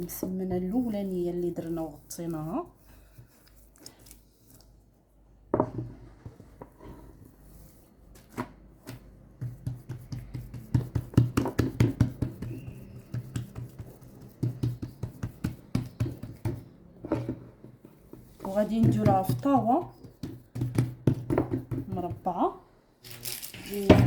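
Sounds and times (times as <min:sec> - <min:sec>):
hands slapping dough: 0:08.1 - 0:16.7, 0:17.9 - 0:22.3.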